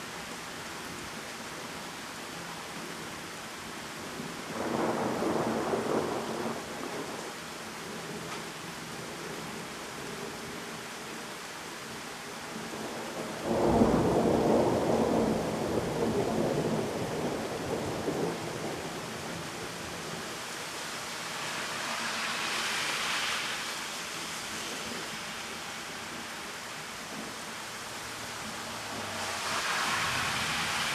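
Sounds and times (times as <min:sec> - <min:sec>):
pouring rain: 0:00.0 - 0:30.9
high hiss: 0:20.6 - 0:26.5, 0:28.1 - 0:30.9.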